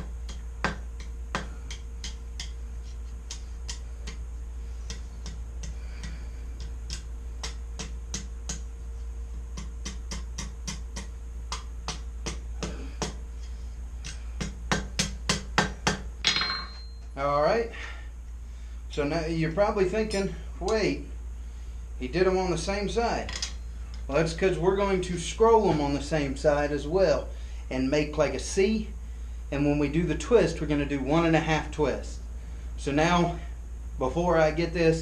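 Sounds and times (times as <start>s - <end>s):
hammer tapping steel on anvil: 0.0s - 2.6s, 14.0s - 17.1s, 20.0s - 20.4s
low hum: 0.0s - 35.0s.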